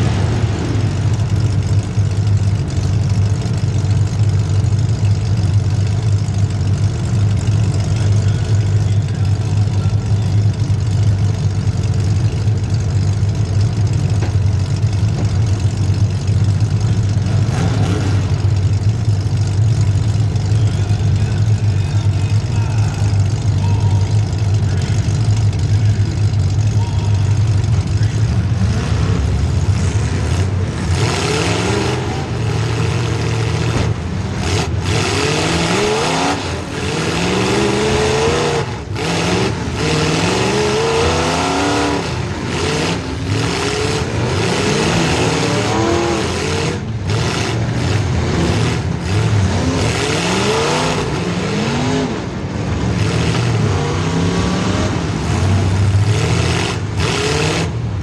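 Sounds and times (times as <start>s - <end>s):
car engine revving hard: 17.2s - 18.4s, 28.5s - 58.0s.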